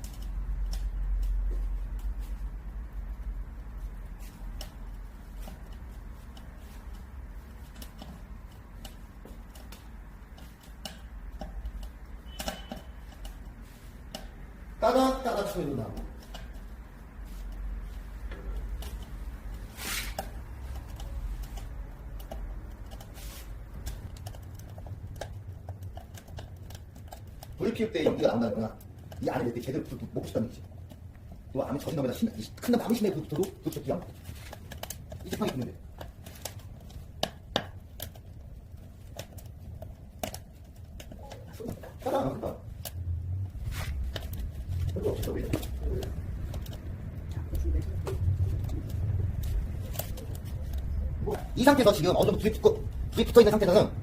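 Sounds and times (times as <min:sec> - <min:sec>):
wood fire crackling: 0:00.0 - 0:54.0
low steady rumble: 0:34.8 - 0:54.0.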